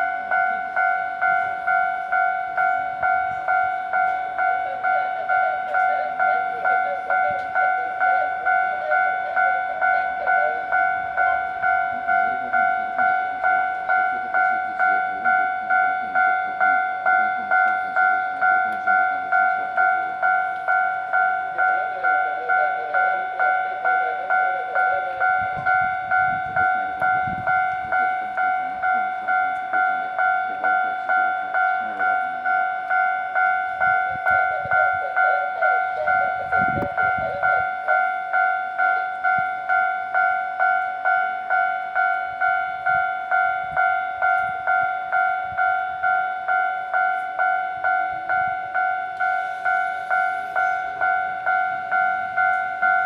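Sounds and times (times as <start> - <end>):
level crossing bell dinging: 0.0 - 53.0.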